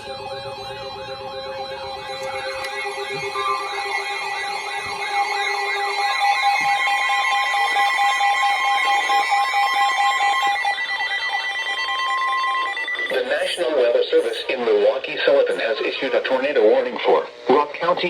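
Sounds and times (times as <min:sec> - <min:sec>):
warbling siren: 0:00.0 - 0:13.7.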